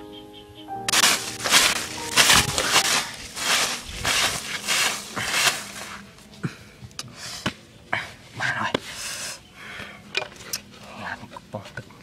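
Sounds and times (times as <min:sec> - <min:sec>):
plastic bottle crinkling: 0:00.9 - 0:06.0.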